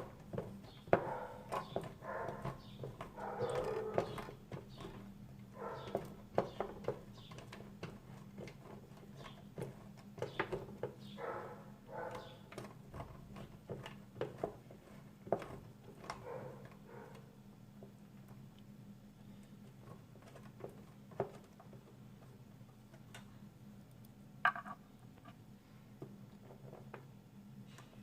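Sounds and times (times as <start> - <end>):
rustling or scraping noises: 0.0 - 17.2, 19.3 - 23.1.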